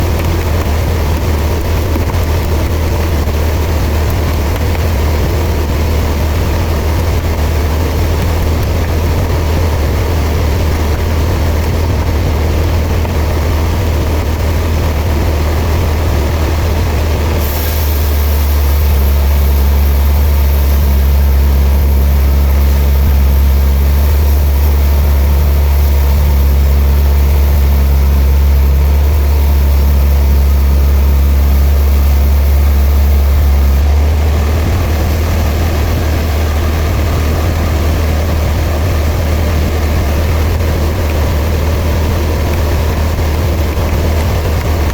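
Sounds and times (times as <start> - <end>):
sawmill machinery droning: 0.0 - 44.9.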